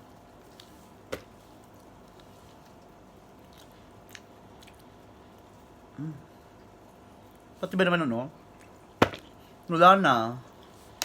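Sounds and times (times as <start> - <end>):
faint chewing: 0.4 - 7.5.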